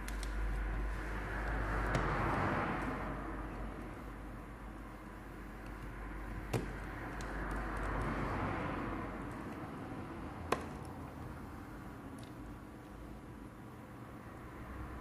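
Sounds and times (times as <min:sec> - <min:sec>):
sharp clicks: 0:00.0 - 0:00.5
road traffic: 0:00.0 - 0:15.0
vehicle passing: 0:00.4 - 0:10.5.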